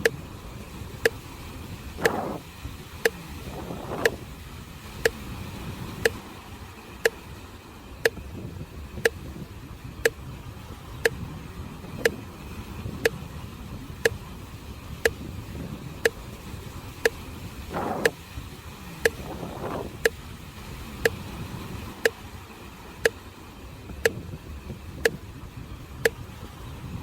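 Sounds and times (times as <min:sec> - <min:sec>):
sharp metronome tick: 0:00.0 - 0:00.2, 0:01.0 - 0:01.2, 0:02.0 - 0:02.4, 0:03.0 - 0:04.2, 0:05.0 - 0:05.2, 0:06.0 - 0:06.2, 0:07.0 - 0:07.2, 0:08.0 - 0:08.3, 0:09.0 - 0:10.2, 0:11.0 - 0:11.2, 0:12.0 - 0:12.2, 0:13.0 - 0:13.2, 0:15.0 - 0:15.2, 0:16.0 - 0:16.2, 0:17.0 - 0:17.2, 0:17.8 - 0:18.2, 0:19.0 - 0:19.3, 0:20.0 - 0:20.2, 0:21.0 - 0:21.2, 0:22.0 - 0:22.2, 0:23.0 - 0:23.2, 0:24.0 - 0:24.2, 0:26.0 - 0:26.2
waves on the shore: 0:00.0 - 0:27.0.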